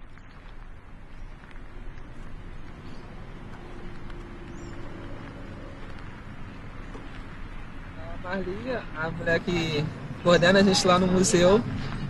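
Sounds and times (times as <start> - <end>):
outdoor background rumble: 0.0 - 12.0.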